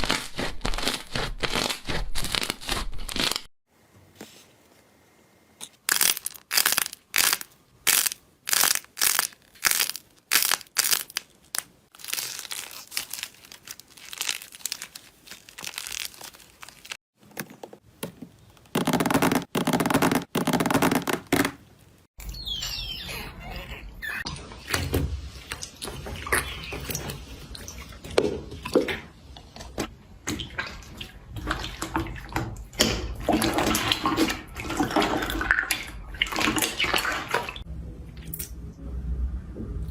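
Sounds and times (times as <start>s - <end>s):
slime crunching squeezes: 5.8s - 17.0s
slime squishing: 5.9s - 17.0s.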